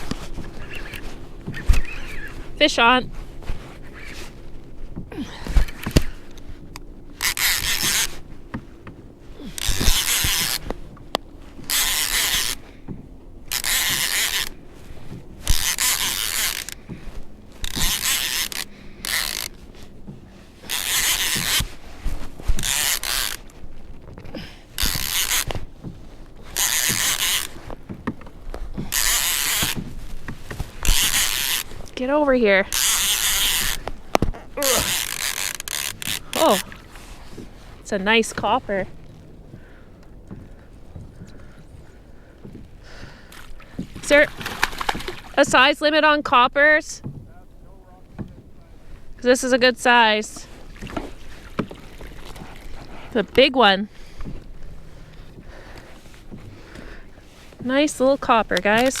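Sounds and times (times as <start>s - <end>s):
fishing reel ratcheting: 5.6s - 8.3s, 9.4s - 12.7s, 13.5s - 14.6s, 15.4s - 16.9s, 17.5s - 19.9s, 20.6s - 21.7s, 22.4s - 23.6s, 24.8s - 25.6s, 26.5s - 27.7s, 28.8s - 29.9s, 30.5s - 32.0s, 32.6s - 37.0s, 58.8s - 59.0s.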